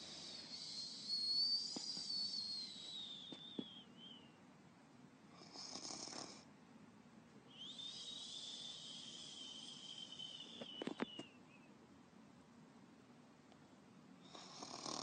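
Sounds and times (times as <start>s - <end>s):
person imitating whistling snore: 0.0s - 4.2s, 7.5s - 11.2s, 14.3s - 15.0s.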